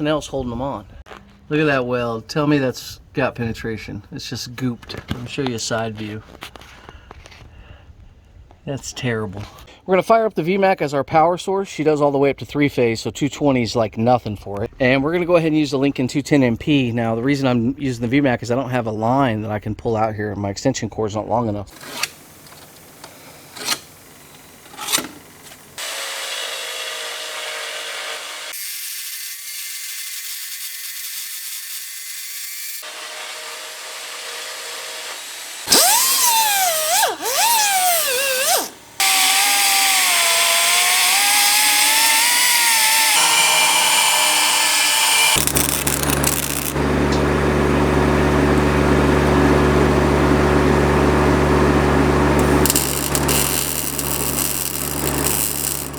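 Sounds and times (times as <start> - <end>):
power tools on metal: 21.7 - 47.4, 52.4 - 55.9
low hum: 39.9 - 55.9.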